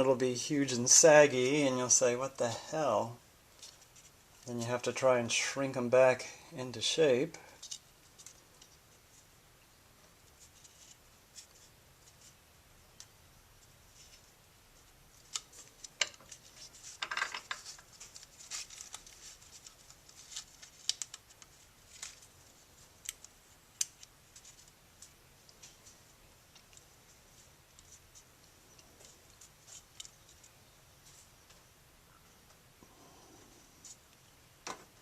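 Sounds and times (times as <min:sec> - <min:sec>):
light clicks and scratchy rubs: 0:03.5 - 0:05.4, 0:07.0 - 0:09.3, 0:10.1 - 0:12.4, 0:13.0 - 0:31.7, 0:33.7 - 0:34.9.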